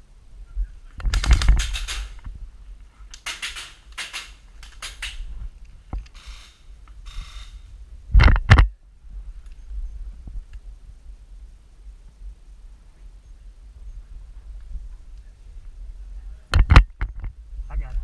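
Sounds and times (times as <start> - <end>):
wind rumble on microphone: 0.0 - 3.0, 4.9 - 18.0
airsoft guns firing: 1.1 - 2.2.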